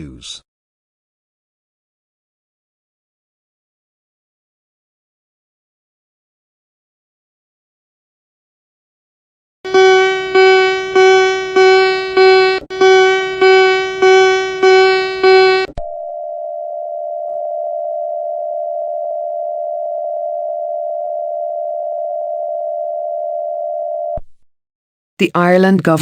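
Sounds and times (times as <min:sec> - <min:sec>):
steady alert tone: 0:09.7 - 0:15.7.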